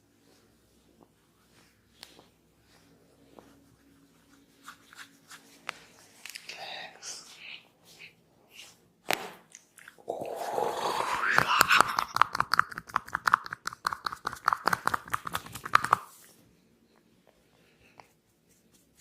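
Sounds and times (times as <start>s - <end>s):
fingers scrunching hair: 10.9s - 16.2s.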